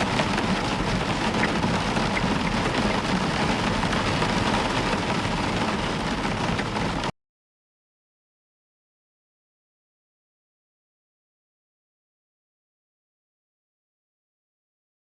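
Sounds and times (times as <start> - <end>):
heavy rain on a roof: 0.0 - 7.1.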